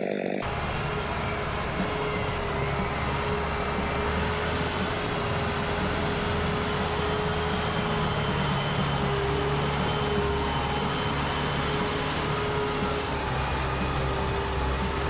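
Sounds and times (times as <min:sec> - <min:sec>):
engine droning steadily: 0:00.4 - 0:15.0.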